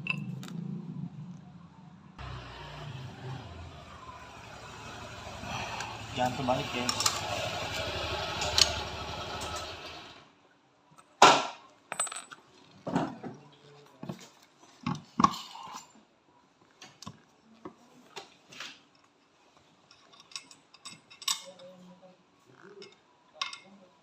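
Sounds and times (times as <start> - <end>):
metal tools clinking: 6.8 - 7.4, 19.9 - 21.8.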